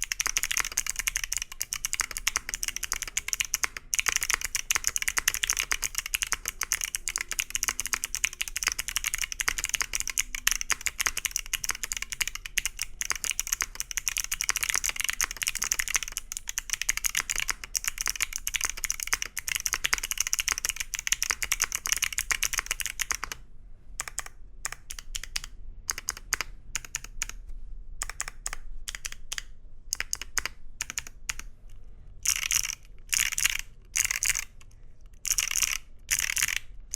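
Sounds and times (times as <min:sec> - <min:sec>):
mechanical keyboard typing: 0:00.0 - 0:23.4, 0:24.0 - 0:27.4, 0:28.0 - 0:31.6, 0:32.2 - 0:36.7.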